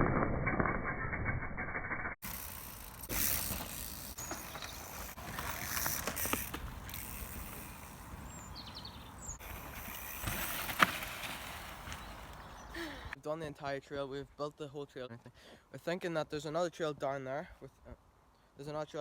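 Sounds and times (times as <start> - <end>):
bike clicks and rattles: 2.2 - 13.2
bike rolling over dirt: 2.2 - 13.2
bird chirps: 4.2 - 5.1, 8.2 - 9.4, 11.8 - 13.2.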